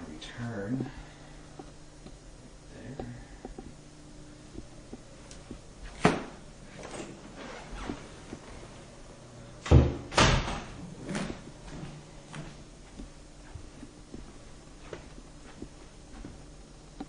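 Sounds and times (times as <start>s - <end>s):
door knocks and thuds: 9.7s - 10.7s.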